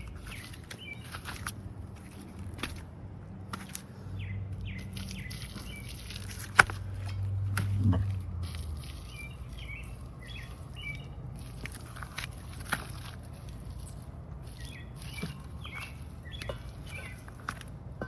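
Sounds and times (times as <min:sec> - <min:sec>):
small bird chirping: 0:00.0 - 0:01.5, 0:04.1 - 0:06.3, 0:08.8 - 0:11.8, 0:13.4 - 0:17.4
steady low rumble: 0:00.0 - 0:18.0.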